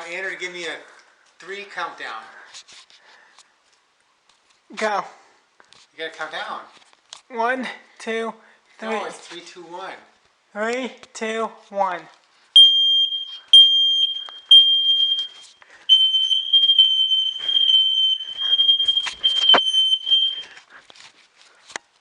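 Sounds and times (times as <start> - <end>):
smoke alarm beeping: 12.6 - 20.6.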